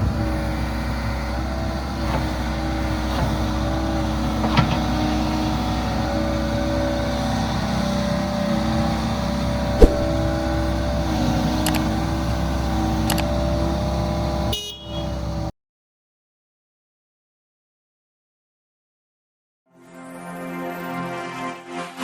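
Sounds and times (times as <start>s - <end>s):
sharp clicks or knocks: 9.8s - 10.1s.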